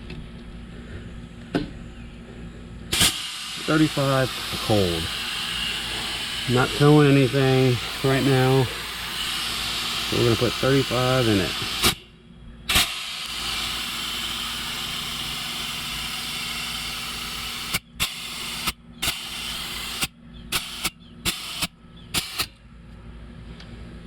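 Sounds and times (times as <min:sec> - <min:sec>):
compressed air hissing into tire: 0:02.9 - 0:12.1, 0:12.7 - 0:22.6.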